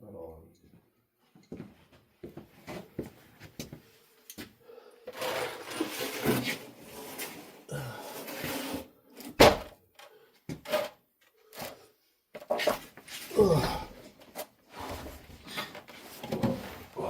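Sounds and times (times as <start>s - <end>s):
rummaging and clattering: 10.5s - 11.8s, 14.2s - 17.0s.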